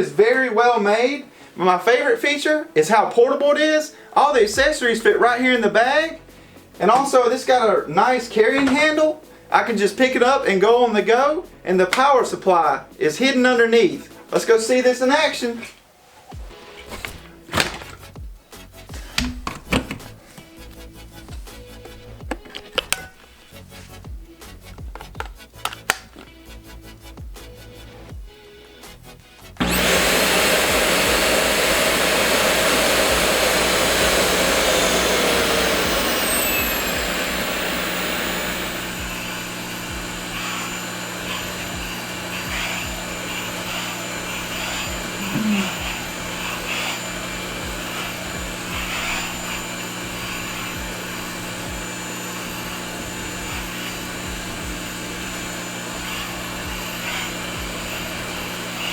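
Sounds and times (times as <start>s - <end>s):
grooming vacuum motor running: 29.6s - 58.9s.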